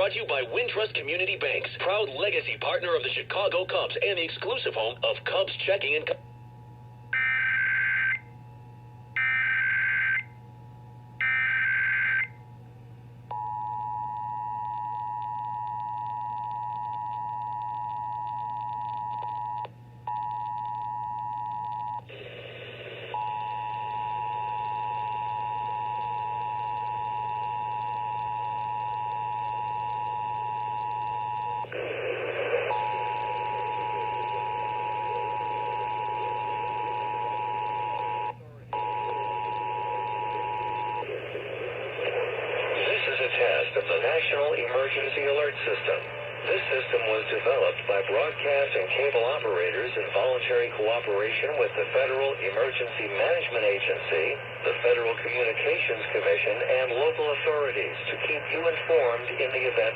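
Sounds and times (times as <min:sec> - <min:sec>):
bursts of radio noise: 0:31.7 - 0:59.9.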